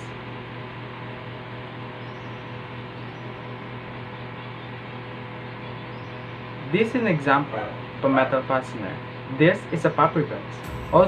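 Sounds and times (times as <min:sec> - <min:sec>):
low hum: 0:10.6 - 0:11.0.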